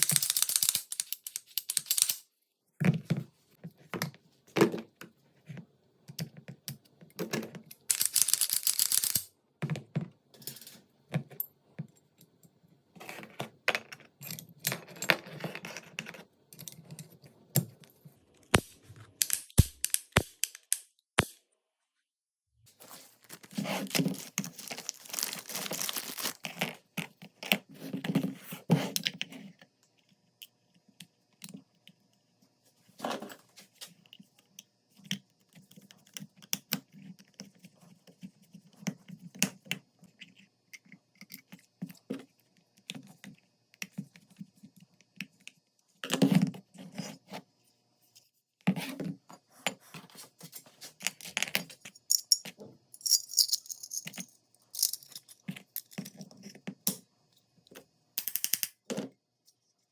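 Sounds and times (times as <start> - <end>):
metal parts clicking and rattling: 0.0 - 2.3, 7.4 - 9.3, 51.1 - 56.3.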